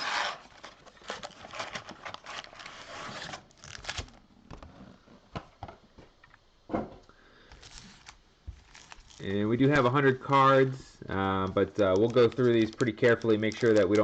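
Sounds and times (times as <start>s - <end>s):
foil packs rustling and crinkling: 0.0s - 4.2s, 7.6s - 10.0s, 11.5s - 14.0s.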